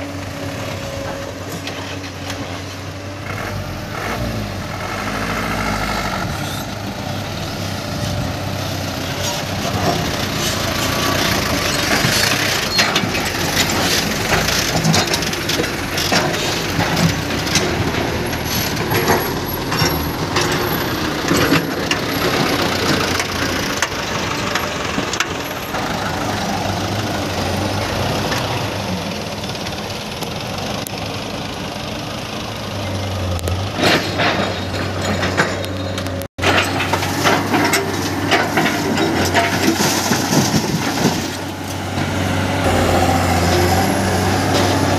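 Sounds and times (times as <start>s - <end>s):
diesel engines running: 0.0s - 44.9s
dirt and rock crashing into truck: 36.4s - 41.6s.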